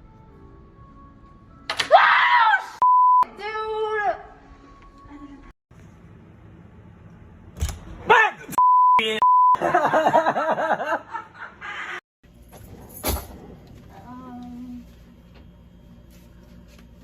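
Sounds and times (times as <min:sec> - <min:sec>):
high censor bleep: 0:02.8 - 0:03.3, 0:08.6 - 0:09.6
person yelling: 0:08.1 - 0:08.6.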